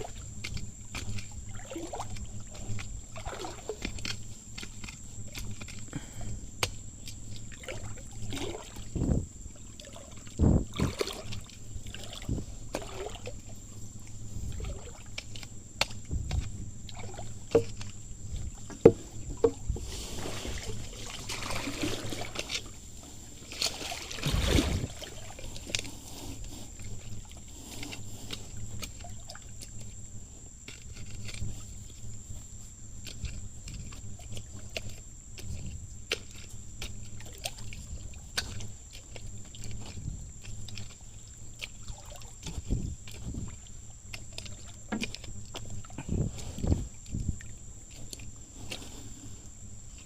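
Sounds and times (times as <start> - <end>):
shallow water sloshing and splashing: 0.0 - 50.0
irregular knocks and clicks: 18.6 - 19.8.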